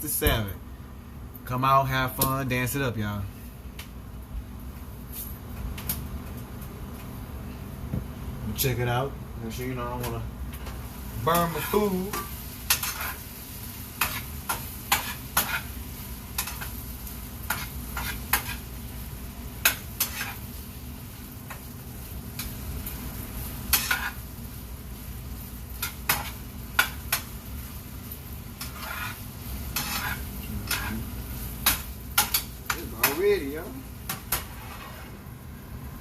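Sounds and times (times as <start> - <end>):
food sizzling: 9.6 - 36.0.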